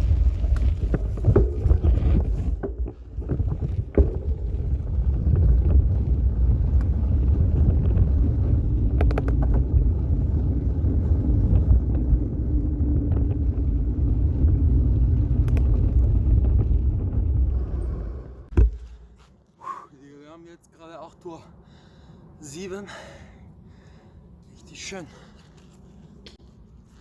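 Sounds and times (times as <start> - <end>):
sharp rattles from bumps: 0.0 - 6.0
wind buffeting microphone: 0.0 - 18.6
bicycle tyres rumbling on track: 0.0 - 19.1.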